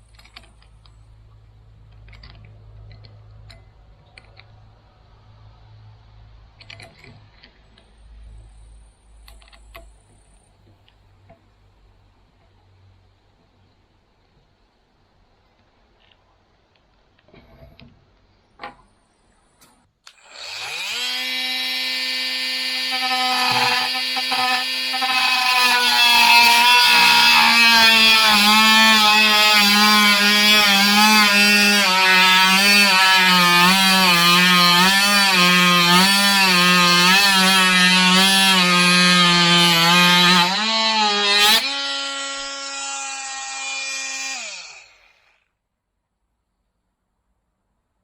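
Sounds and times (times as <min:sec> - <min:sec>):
oscillating multi-tool whining: 0:20.1 - 0:45.4.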